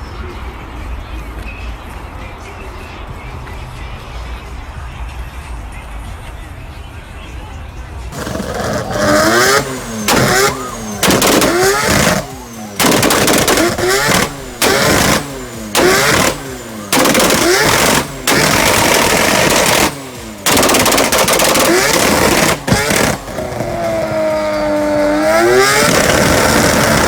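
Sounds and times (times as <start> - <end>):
car engine revving: 8.1 - 27.0.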